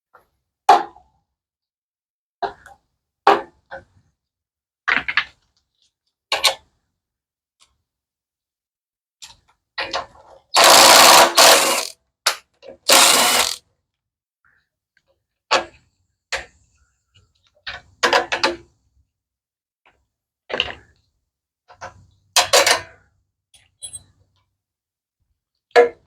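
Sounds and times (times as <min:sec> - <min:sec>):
noisy tool bursts: 0:10.6 - 0:11.9, 0:12.9 - 0:13.6
metal and plastic parts clicking: 0:12.9 - 0:13.6.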